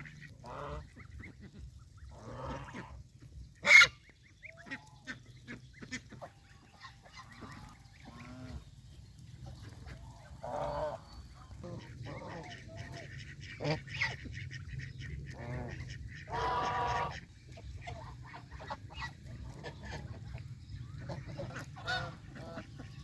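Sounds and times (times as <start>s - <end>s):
geese honking: 0.0s - 23.0s.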